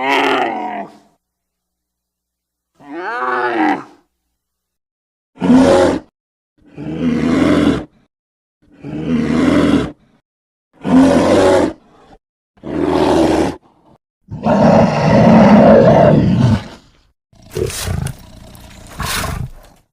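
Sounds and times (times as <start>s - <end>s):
creature roars: 0.0s - 1.1s, 5.4s - 8.0s, 8.7s - 10.1s, 10.8s - 19.9s.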